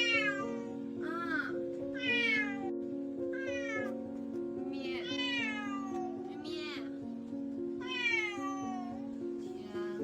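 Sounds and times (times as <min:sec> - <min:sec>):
cat meowing: 0:00.0 - 0:04.0, 0:05.0 - 0:06.7, 0:07.8 - 0:09.1
background music with sustained notes: 0:00.0 - 0:10.0.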